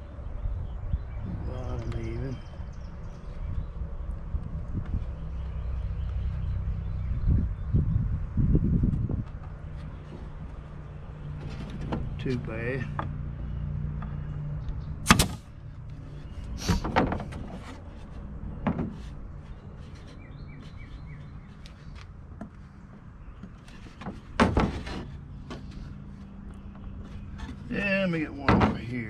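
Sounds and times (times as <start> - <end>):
sharp wooden knocks: 15.0 - 15.5, 23.4 - 25.1, 28.4 - 28.9.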